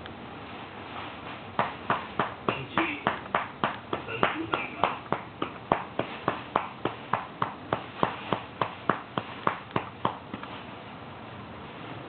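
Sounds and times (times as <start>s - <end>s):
hand patting baby's back: 1.6s - 10.6s.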